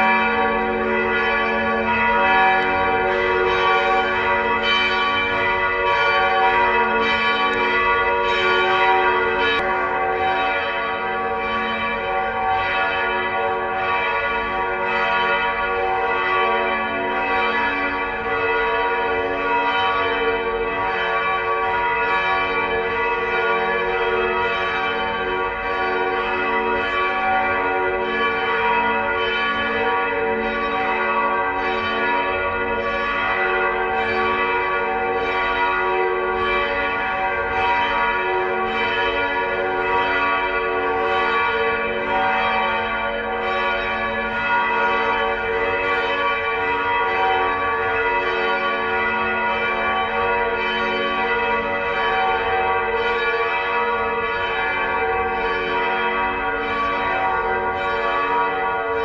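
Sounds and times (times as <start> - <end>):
church bells pealing: 0.0 - 59.0.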